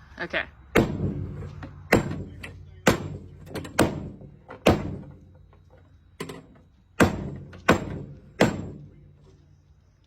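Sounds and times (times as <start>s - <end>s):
knocks on plumbing pipe: 1.9s - 5.1s, 7.0s - 8.8s.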